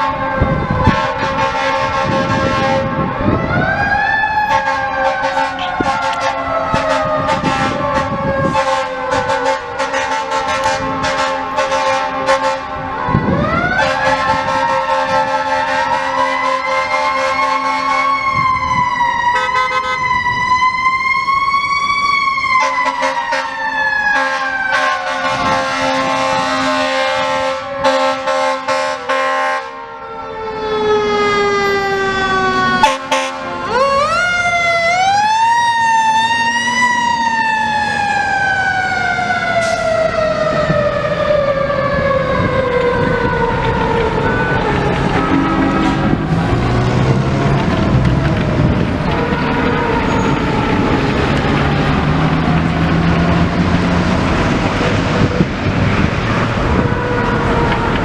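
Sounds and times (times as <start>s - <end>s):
air horn blasts: 0.0s - 3.1s, 4.4s - 12.9s, 13.7s - 18.2s, 19.4s - 20.1s, 22.6s - 29.8s, 32.8s - 33.8s.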